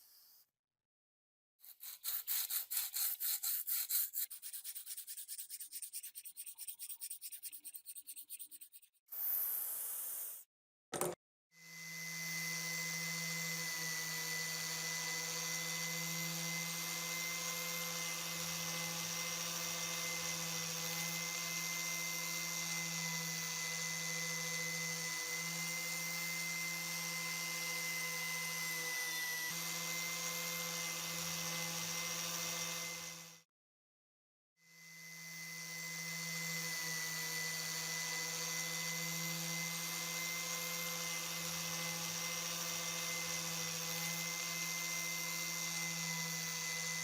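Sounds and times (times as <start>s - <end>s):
electric power tool whining: 11.6s - 33.4s, 34.8s - 47.0s.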